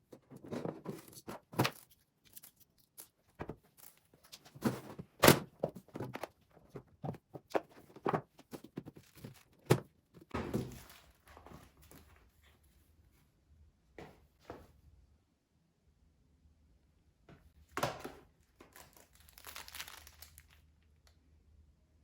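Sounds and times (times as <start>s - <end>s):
objects knocking and thudding: 0.1s - 1.8s, 4.4s - 11.0s.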